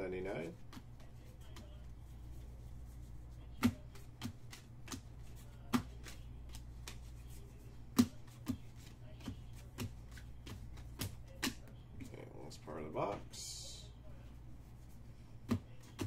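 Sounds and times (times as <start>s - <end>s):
cards tapping on a table: 7.9s - 11.6s.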